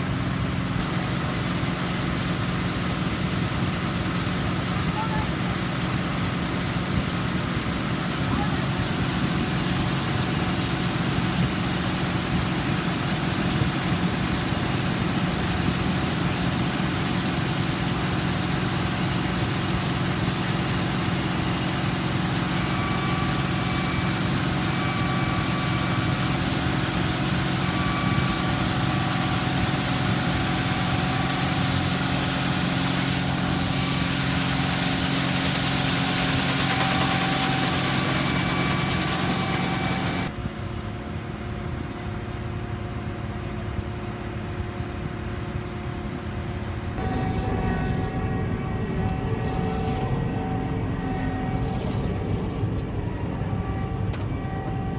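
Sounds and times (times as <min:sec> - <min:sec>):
diesel engine running: 0:00.0 - 0:54.9
two-pitch beep: 0:47.0 - 0:54.9.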